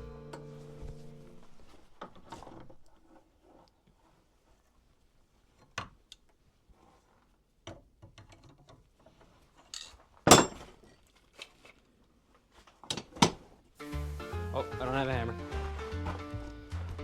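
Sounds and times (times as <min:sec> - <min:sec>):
metal tools clinking and knocking: 0:09.7 - 0:11.2.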